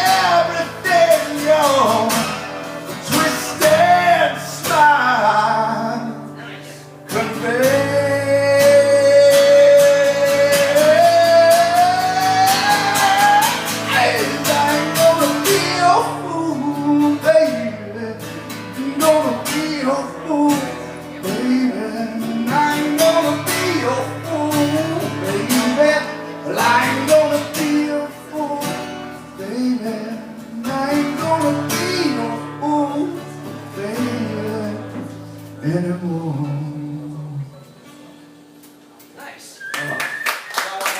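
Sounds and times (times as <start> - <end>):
strummed guitar: 0.0 - 38.9
person singing: 3.1 - 28.8.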